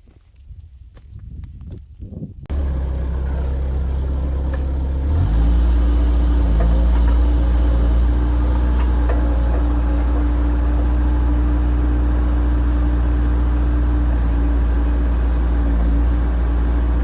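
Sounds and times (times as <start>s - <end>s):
diesel engine revving: 2.5s - 17.0s.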